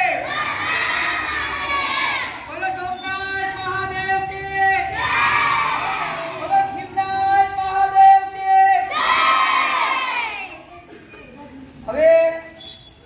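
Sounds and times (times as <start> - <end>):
children shouting together: 0.2 - 2.4, 4.9 - 6.4, 8.9 - 10.6.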